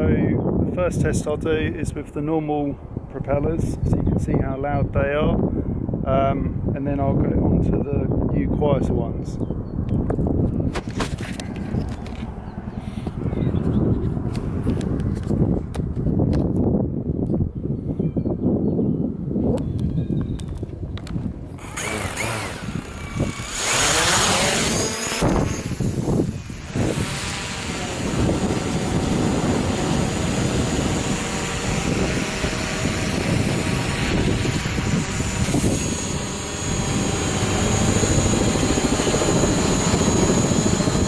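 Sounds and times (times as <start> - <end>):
drone propellers buzzing: 9.5 - 16.2, 19.2 - 41.0.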